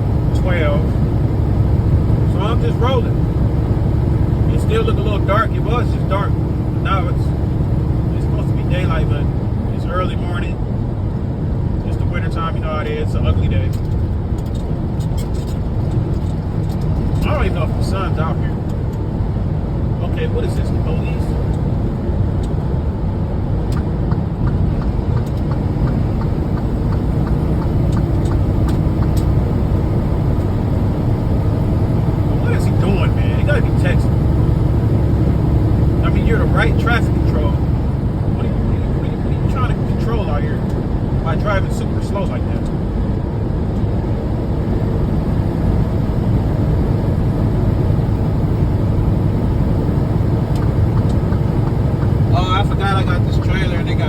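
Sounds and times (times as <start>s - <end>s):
truck engine and road rumble: 0.0s - 54.0s
light ticks: 23.6s - 29.4s, 50.5s - 52.8s.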